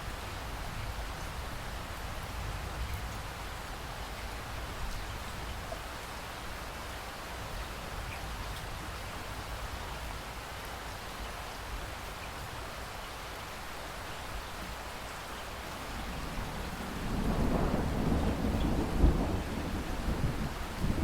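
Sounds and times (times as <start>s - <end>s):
steady rain falling: 0.0s - 21.0s
rolling thunder: 16.0s - 21.0s.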